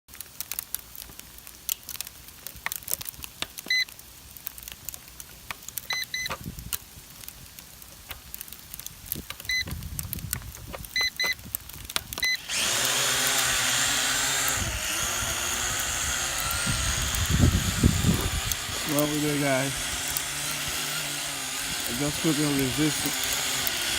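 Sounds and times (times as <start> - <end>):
drone propeller whir: 12.2 - 23.9.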